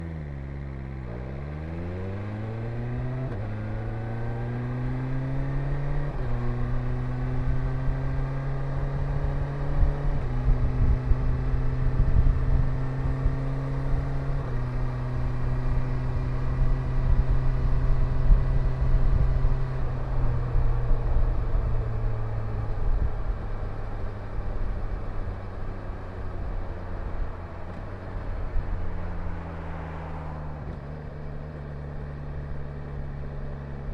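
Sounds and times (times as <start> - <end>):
motorcycle engine revving through gears: 0.0 - 33.9
wind rumble on microphone: 7.4 - 14.6, 15.2 - 25.5.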